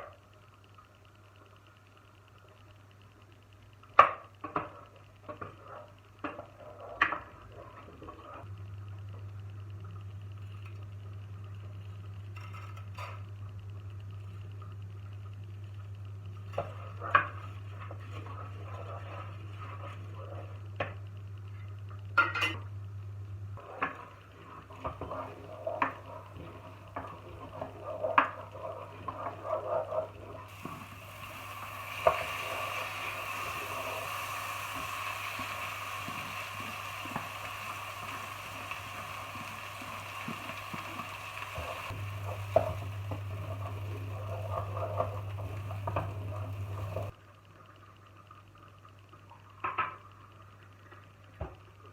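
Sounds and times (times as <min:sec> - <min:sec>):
food sizzling in a pan: 0:03.5 - 0:09.4, 0:15.6 - 0:21.6, 0:23.6 - 0:47.2
low hum: 0:30.5 - 0:47.1.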